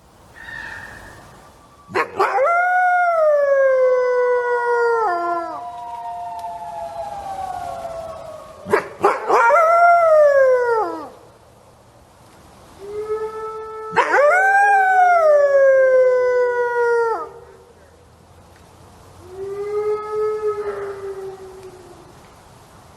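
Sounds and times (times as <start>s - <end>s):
wolf howling: 0.4s - 11.2s.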